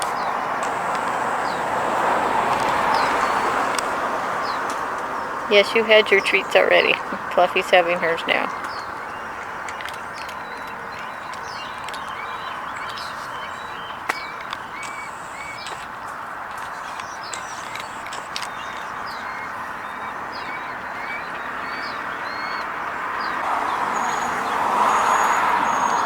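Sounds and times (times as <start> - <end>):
steady rushing noise: 0.0 - 8.6
small birds chirping: 0.0 - 26.0
steady background noise: 0.0 - 26.0.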